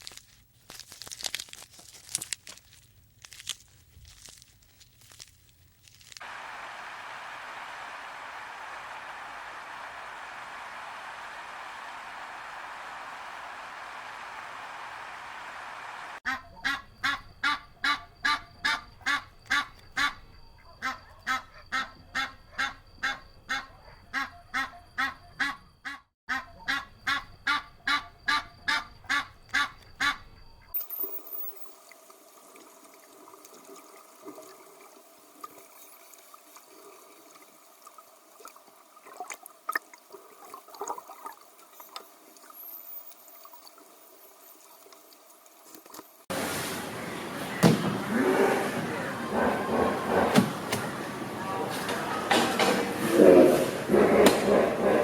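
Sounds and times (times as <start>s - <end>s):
duck quacking: 16.3s - 20.2s, 20.8s - 30.2s
faint high chirps: 27.3s - 32.0s, 41.6s - 46.2s.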